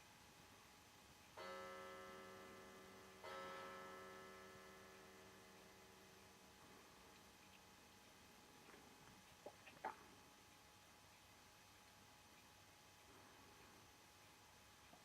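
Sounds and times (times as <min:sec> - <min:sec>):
clock chime ringing: 0:01.4 - 0:06.0.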